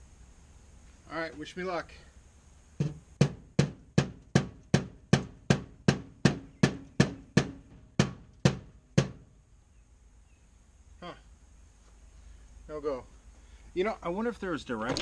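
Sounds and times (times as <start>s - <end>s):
rubber mallet striking: 2.8s - 9.2s.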